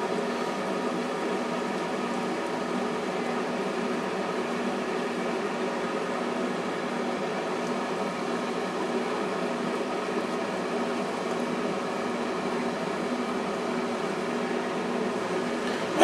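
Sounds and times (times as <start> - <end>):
fan motor humming: 0.0 - 16.0.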